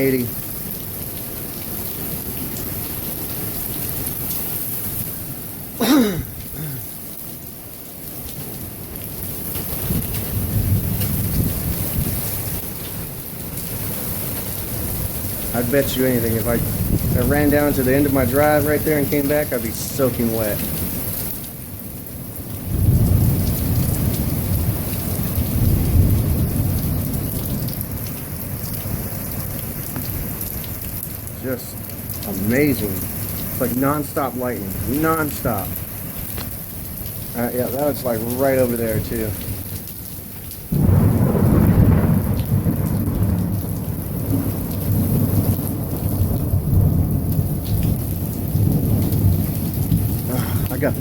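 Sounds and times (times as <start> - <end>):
heavy rain hissing: 0.0 - 51.0
thunder rumbling: 9.7 - 12.7, 14.4 - 21.0, 22.6 - 39.8, 40.7 - 51.0.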